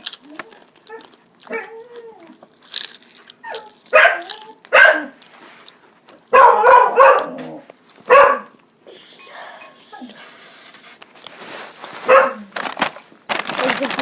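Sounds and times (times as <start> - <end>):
dog whining: 0.1 - 2.5, 3.4 - 5.2, 8.9 - 10.4
dog barking: 3.9 - 5.2, 6.3 - 7.5, 8.1 - 8.6, 12.0 - 12.5.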